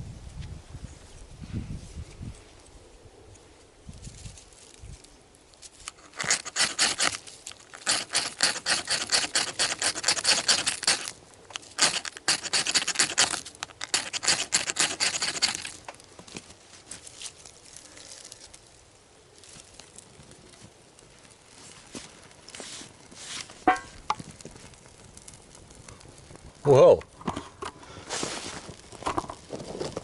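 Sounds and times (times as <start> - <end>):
bark being scraped and torn: 5.7 - 18.7, 21.4 - 24.4.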